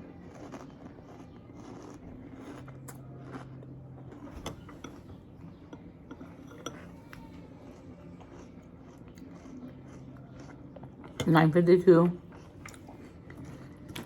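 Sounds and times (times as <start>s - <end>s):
crunchy cereal eaten: 0.0s - 4.4s, 7.5s - 11.2s.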